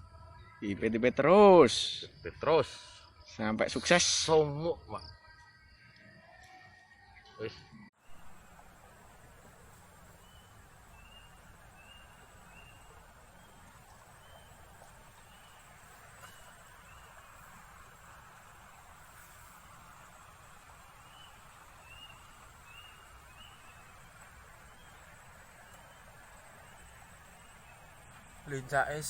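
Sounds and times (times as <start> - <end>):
steady hiss: 8.0 - 29.0.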